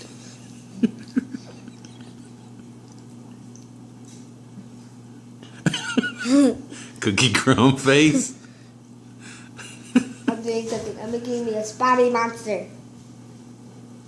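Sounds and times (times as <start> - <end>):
steady low hum: 0.0 - 14.0
person speaking: 6.2 - 8.5.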